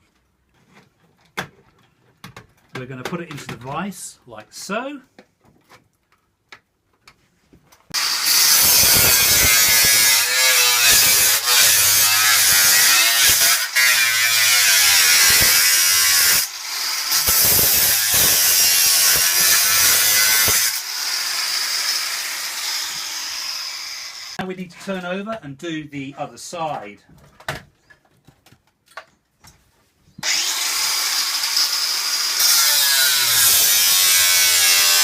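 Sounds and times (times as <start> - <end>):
saw rasping through metal: 8.0 - 24.4, 30.2 - 35.0.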